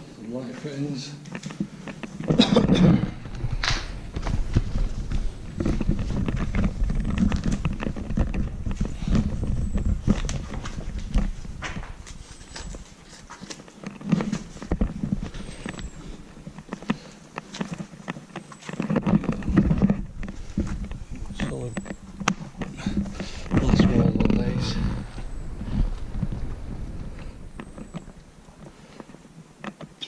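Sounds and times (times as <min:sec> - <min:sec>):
low rumble: 0:19.4 - 0:28.6.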